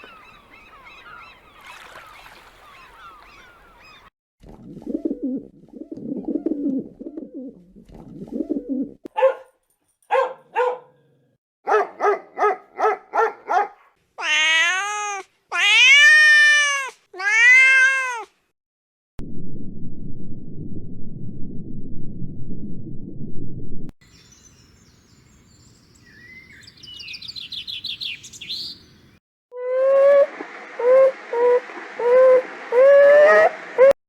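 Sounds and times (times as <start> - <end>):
cat meowing: 14.2 - 18.3.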